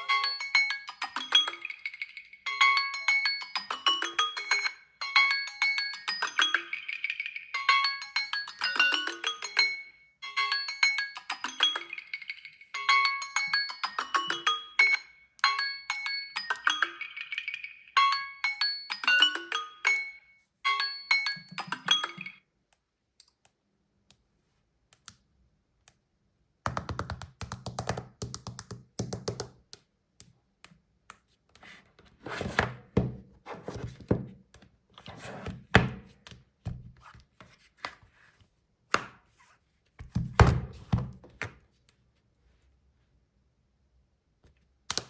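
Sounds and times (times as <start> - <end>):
smartphone ringtone melody: 0.0 - 22.4.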